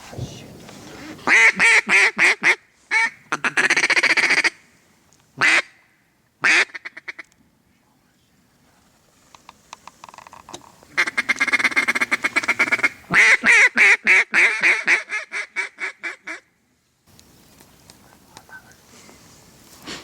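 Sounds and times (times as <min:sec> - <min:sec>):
duck call quacks: 0:01.3 - 0:04.6, 0:05.4 - 0:05.8, 0:11.0 - 0:16.4.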